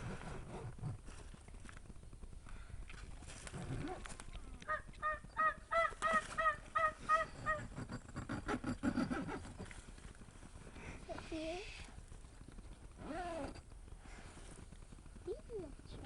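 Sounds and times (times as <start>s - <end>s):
turkey yelping: 4.7s - 7.7s.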